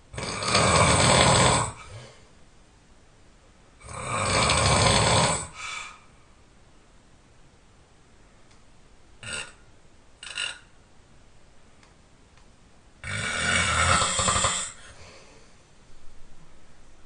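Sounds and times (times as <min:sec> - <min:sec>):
person snoring loudly: 0:00.1 - 0:02.2, 0:03.8 - 0:06.0, 0:09.2 - 0:09.6, 0:10.2 - 0:10.7, 0:13.0 - 0:15.0
person breathing: 0:05.4 - 0:06.4, 0:14.7 - 0:15.8.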